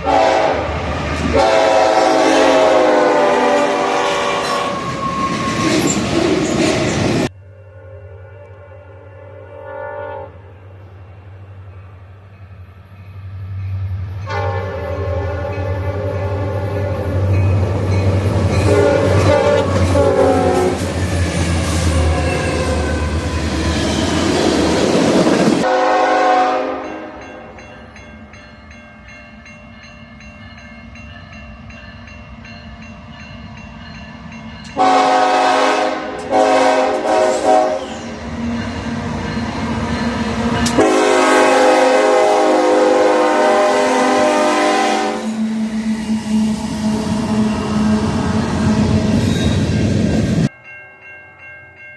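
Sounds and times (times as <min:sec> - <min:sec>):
locomotive air horn chord: 0:00.0 - 0:04.8, 0:07.6 - 0:10.6, 0:14.2 - 0:17.3, 0:18.6 - 0:20.8, 0:25.6 - 0:27.2, 0:34.8 - 0:38.1, 0:40.6 - 0:49.2
passing train rumble: 0:00.0 - 0:50.8.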